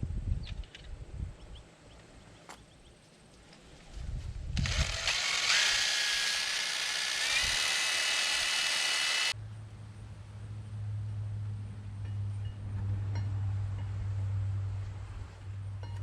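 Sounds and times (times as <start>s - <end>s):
cordless power tool whining: 4.6s - 9.4s.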